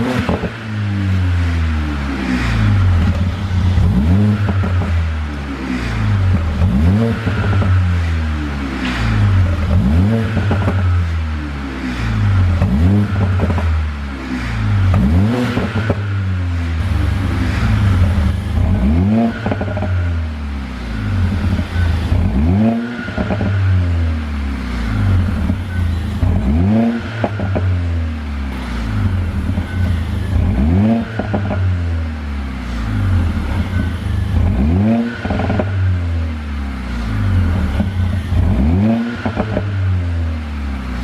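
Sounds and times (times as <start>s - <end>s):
exhaust crackling and popping: 0.0s - 0.7s, 1.3s - 11.4s, 12.1s - 20.4s, 24.9s - 28.0s, 37.1s - 39.8s
car engine revving: 0.0s - 41.0s.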